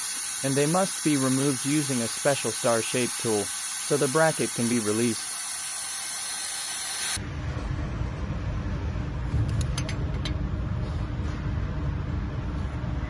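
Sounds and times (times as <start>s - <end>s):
hiss: 0.0s - 7.2s
low steady rumble: 7.2s - 13.0s.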